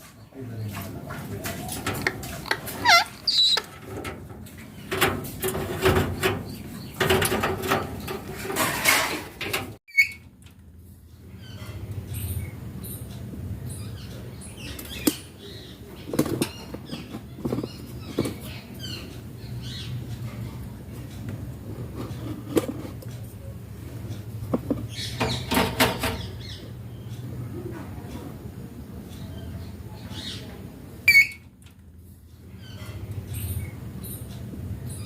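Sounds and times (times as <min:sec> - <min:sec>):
parakeet chirp: 0:02.5 - 0:03.6, 0:09.9 - 0:10.2, 0:31.1 - 0:31.4.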